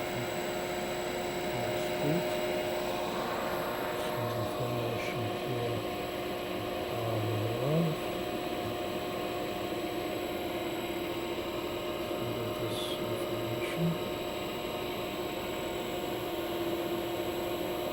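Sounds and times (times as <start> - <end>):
electric motor humming: 0.0 - 6.2.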